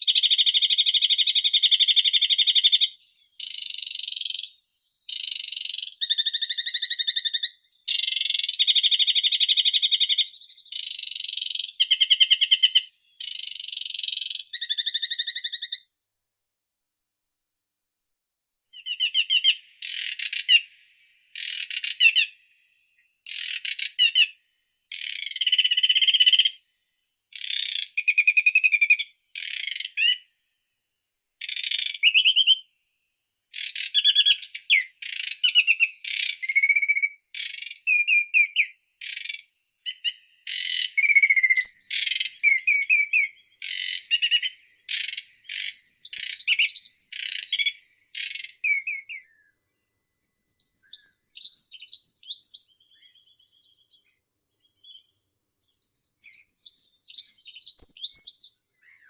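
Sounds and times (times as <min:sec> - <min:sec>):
high-pitched bird chirps: 0:00.0 - 0:15.8, 0:18.8 - 0:20.7, 0:33.6 - 0:59.0
songbird singing: 0:00.0 - 0:15.8, 0:18.8 - 0:22.4, 0:33.6 - 0:59.0.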